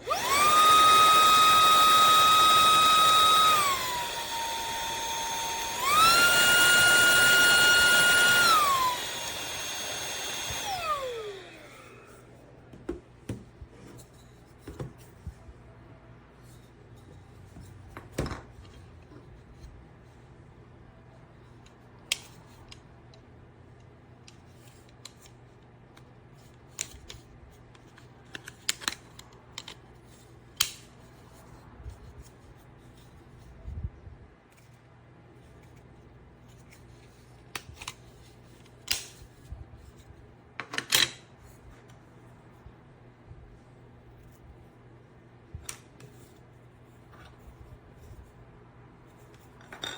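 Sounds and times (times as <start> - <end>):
faint low hum: 10.2 - 40.6.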